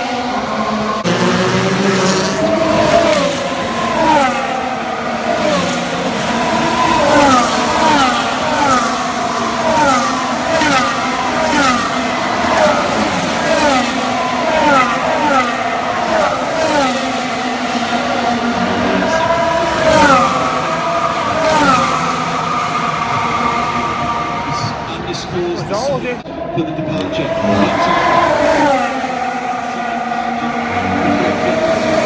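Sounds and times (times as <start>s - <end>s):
race car engines running: 0.0s - 32.0s.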